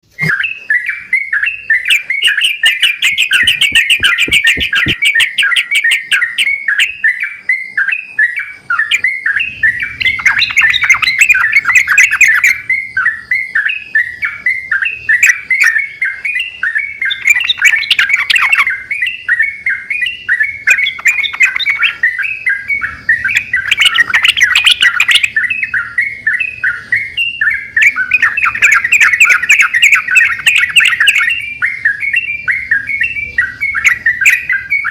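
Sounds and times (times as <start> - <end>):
birds singing and chattering: 0.0 - 34.9.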